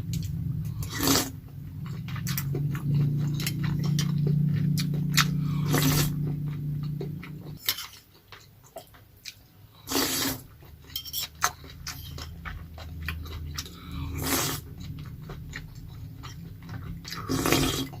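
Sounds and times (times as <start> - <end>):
person chewing: 0.1 - 18.0.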